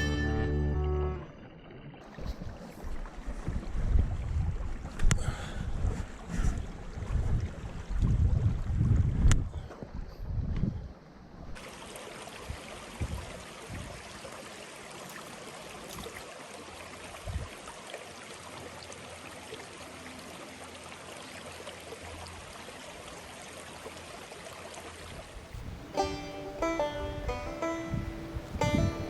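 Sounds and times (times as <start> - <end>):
plucked guitar music: 0.0 - 1.3, 25.9 - 29.0
stream water running: 0.0 - 10.2, 10.8 - 29.0.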